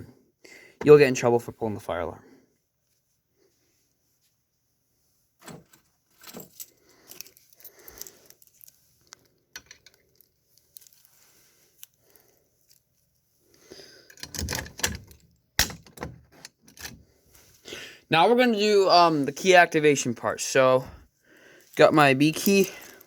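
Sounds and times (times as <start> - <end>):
keys jangling and clicking: 5.4 - 11.0, 22.3 - 23.0.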